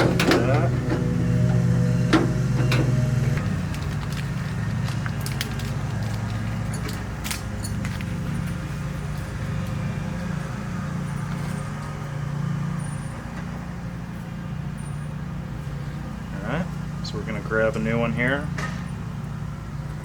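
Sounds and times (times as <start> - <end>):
steady low hum: 0.0 - 4.9.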